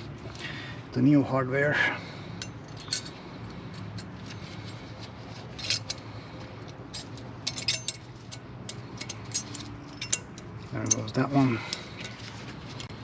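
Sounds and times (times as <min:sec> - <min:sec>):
metal clips clinking: 0:02.4 - 0:04.8, 0:05.6 - 0:06.0, 0:06.9 - 0:12.2.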